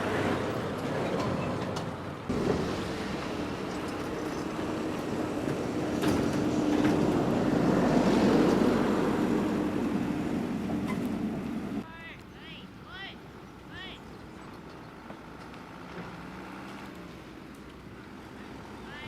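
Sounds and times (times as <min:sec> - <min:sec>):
motor vehicle passing: 0:02.3 - 0:11.8, 0:14.3 - 0:19.0.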